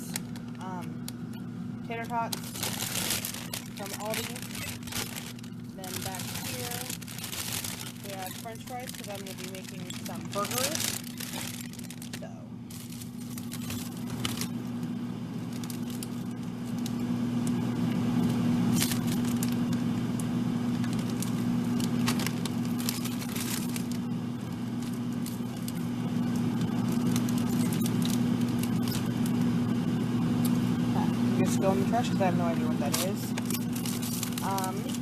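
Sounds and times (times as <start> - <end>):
steady low hum: 0.0 - 35.0
plastic bags crinkling: 2.0 - 14.7, 15.4 - 17.0, 18.7 - 19.9, 20.7 - 29.4, 32.8 - 35.0
packages clicking and knocking: 2.3 - 14.5, 20.8 - 24.0.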